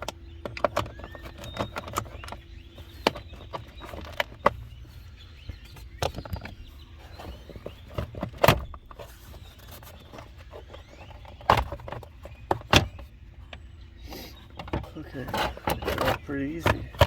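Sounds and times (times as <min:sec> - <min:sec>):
knocks and clicks on plastic trim: 0:00.0 - 0:04.7, 0:14.5 - 0:17.0
steady low hum: 0:00.0 - 0:17.0.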